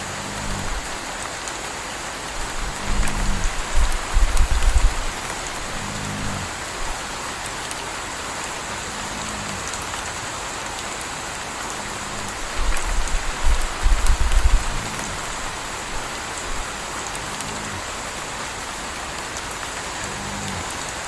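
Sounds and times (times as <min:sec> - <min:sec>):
puppy snoring softly: 0:00.0 - 0:01.0, 0:02.4 - 0:06.5, 0:08.9 - 0:09.8, 0:11.8 - 0:17.9, 0:20.0 - 0:20.8
low rumbling: 0:00.0 - 0:01.2, 0:02.3 - 0:07.1, 0:11.6 - 0:17.9
steady rain falling: 0:00.0 - 0:21.0.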